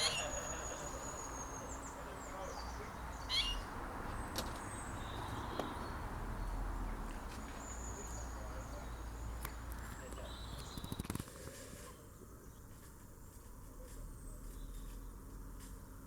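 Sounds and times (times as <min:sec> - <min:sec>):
small birds whistling and chirping: 0:00.0 - 0:03.7
road traffic rumble: 0:00.0 - 0:16.0.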